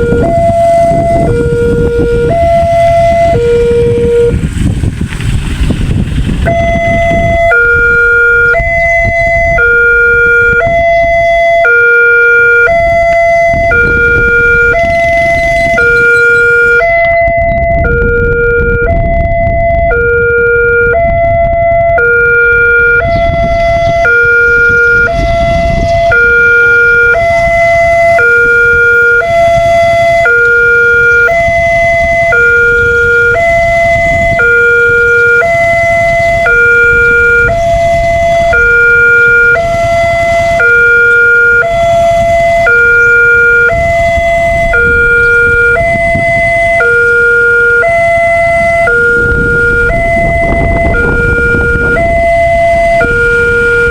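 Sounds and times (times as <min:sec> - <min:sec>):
two-tone level crossing siren: 0:00.0 - 0:04.8, 0:06.4 - 0:53.9
low rumble: 0:00.0 - 0:11.6, 0:47.5 - 0:53.9.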